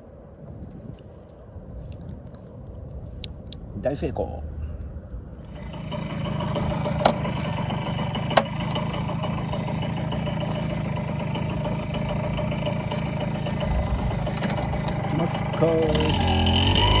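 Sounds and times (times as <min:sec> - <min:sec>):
motorcycle engine idling: 0:05.4 - 0:17.0.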